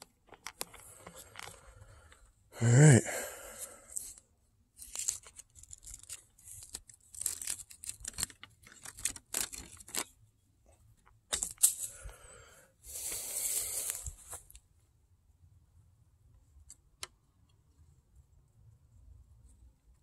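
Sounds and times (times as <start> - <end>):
rustling and crackling: 0.0 - 2.3, 3.9 - 12.2, 12.9 - 14.7.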